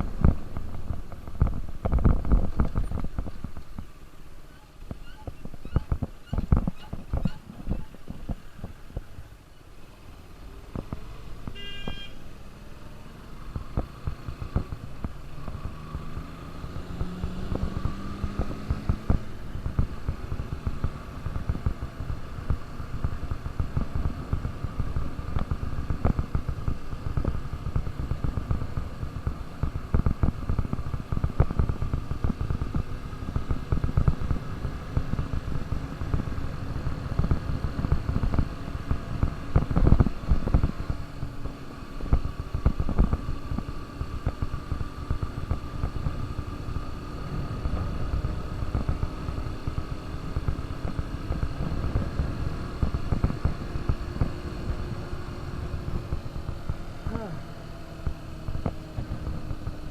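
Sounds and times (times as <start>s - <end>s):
motorcycle engine running: 0.0s - 59.9s
wind buffeting microphone: 4.9s - 9.4s
horn beep: 11.5s - 12.2s.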